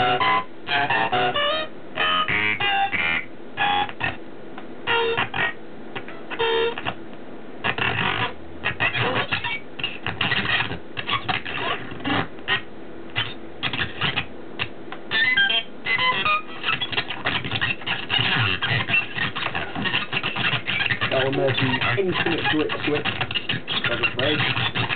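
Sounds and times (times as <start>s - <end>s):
buzzy electronic tones: 0.0s - 4.2s, 4.8s - 7.0s, 7.6s - 24.9s
glitching synthesized speech: 18.3s - 24.9s.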